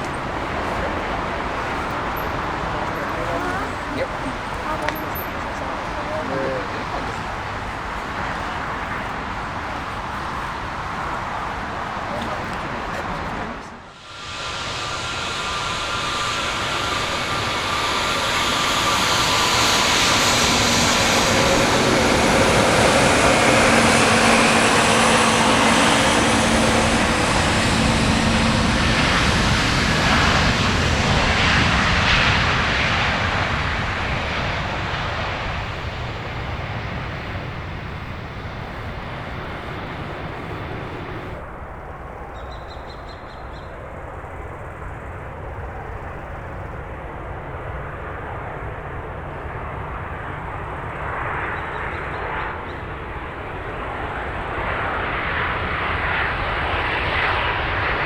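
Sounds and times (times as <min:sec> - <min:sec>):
jet airliner engines roaring past: 0:00.0 - 0:58.0.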